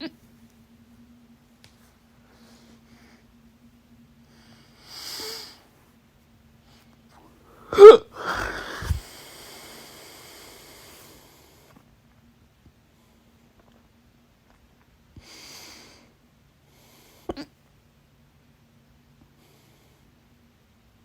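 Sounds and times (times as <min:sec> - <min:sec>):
soft breath: 0:01.8 - 0:03.5, 0:04.2 - 0:05.8, 0:06.6 - 0:11.8
breathy exhale: 0:04.3 - 0:05.7, 0:07.5 - 0:11.7
loud hiccup: 0:07.7 - 0:09.0.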